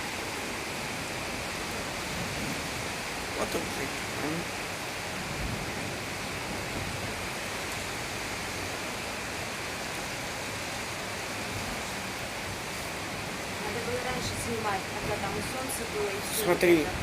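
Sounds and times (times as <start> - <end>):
heavy rain hissing: 0.0 - 17.0.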